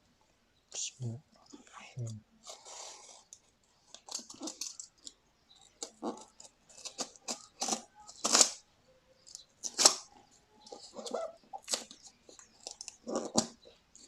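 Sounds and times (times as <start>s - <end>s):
packaging crinkling and tearing: 5.8s - 8.6s, 10.7s - 13.6s.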